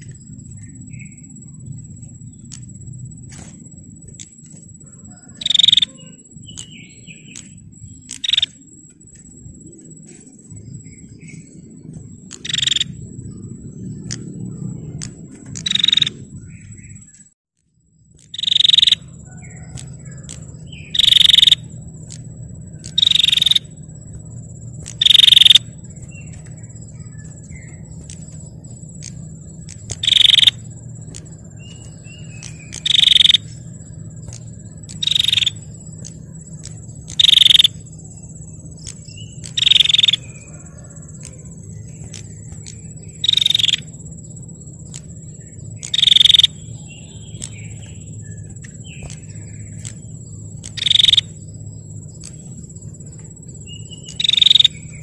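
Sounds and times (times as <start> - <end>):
thin high whine: 0.0 - 55.0
bird giving scratchy trilling calls: 4.2 - 8.6, 12.3 - 13.0, 15.0 - 16.2, 18.2 - 22.2, 22.8 - 23.8, 24.8 - 44.0, 44.8 - 51.4, 53.6 - 55.0.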